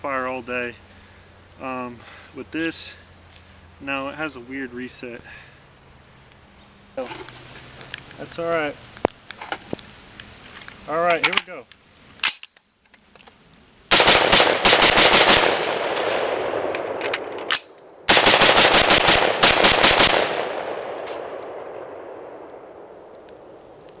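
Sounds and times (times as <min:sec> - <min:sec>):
rifle shots: 0:13.9 - 0:23.7.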